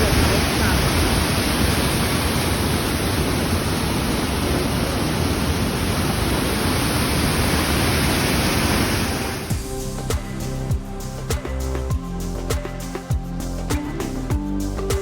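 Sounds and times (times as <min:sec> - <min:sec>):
mountain stream rushing: 0:00.0 - 0:09.6.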